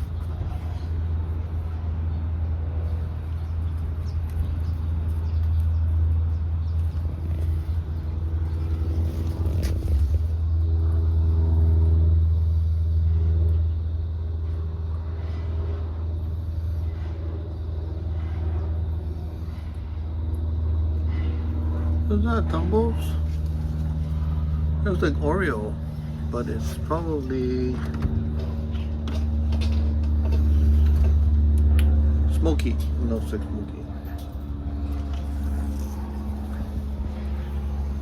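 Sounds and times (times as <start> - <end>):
wind buffeting microphone: 0.0 - 10.8.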